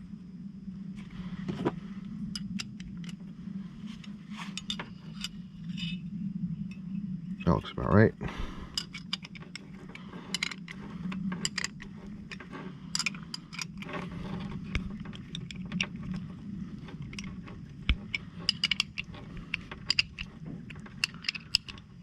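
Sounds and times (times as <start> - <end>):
steady low hum: 0.0 - 22.0
wrench clicking and scraping on metal: 4.0 - 6.0, 8.7 - 16.2, 16.8 - 21.9.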